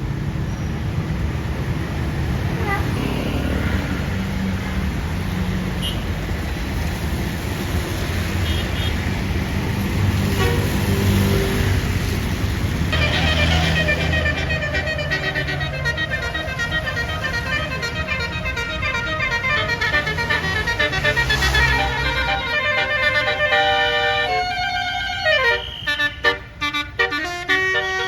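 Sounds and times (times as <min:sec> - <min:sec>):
bus engines running: 0:00.0 - 0:28.0
road traffic: 0:00.0 - 0:28.0
multi-tone air horn melody: 0:12.9 - 0:28.0.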